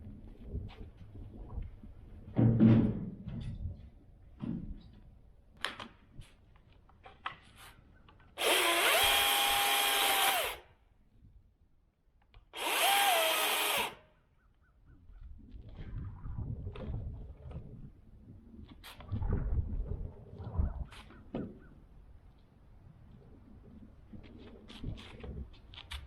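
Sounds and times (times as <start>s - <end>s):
battery chainsaw whining: 8.4s - 10.6s, 12.6s - 14.0s.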